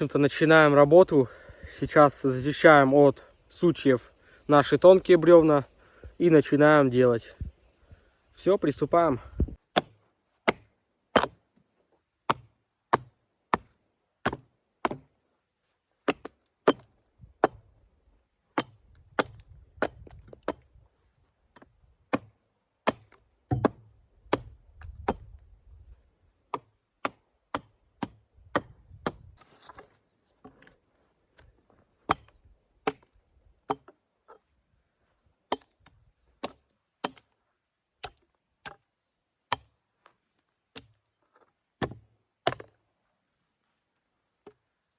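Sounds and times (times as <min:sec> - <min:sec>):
axe chopping branches: 0:09.7 - 0:11.4, 0:12.3 - 0:13.7, 0:14.3 - 0:15.1, 0:16.0 - 0:17.6, 0:32.1 - 0:33.1, 0:41.8 - 0:42.7.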